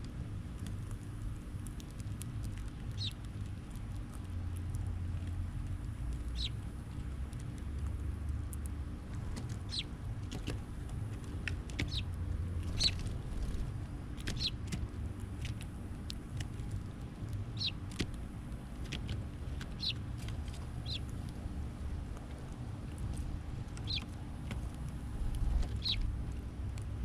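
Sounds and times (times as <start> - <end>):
steady low rumble: 0.0 - 27.0
small birds chirping: 0.6 - 4.8, 5.5 - 8.7, 9.3 - 26.9.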